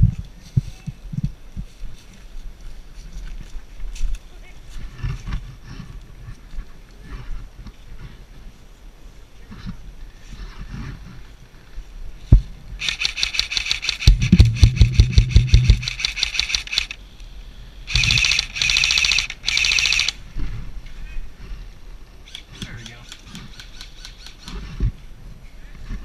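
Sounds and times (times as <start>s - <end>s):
airsoft guns firing full auto: 12.8s - 17.0s, 17.9s - 20.2s.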